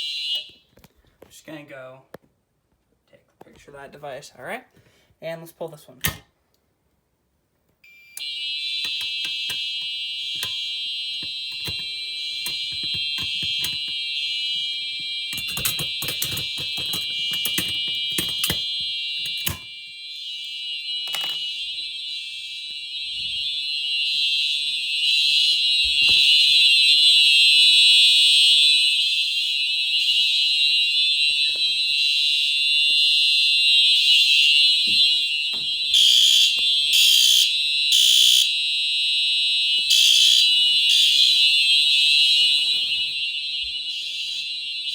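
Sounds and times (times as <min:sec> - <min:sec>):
fire alarm horns: 0:00.0 - 0:01.7, 0:07.8 - 0:44.9
clicks and knocks: 0:14.9 - 0:19.7.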